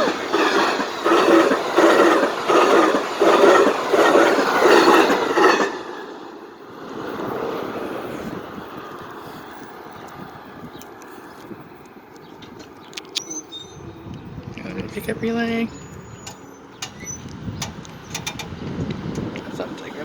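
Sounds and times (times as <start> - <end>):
train wheels clattering: 0.0 - 6.4, 16.2 - 19.9
train rumble: 0.0 - 20.0.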